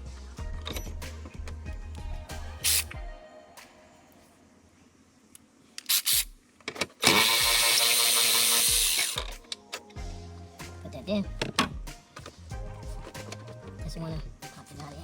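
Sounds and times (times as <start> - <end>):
cordless power tool motor: 7.0 - 9.4.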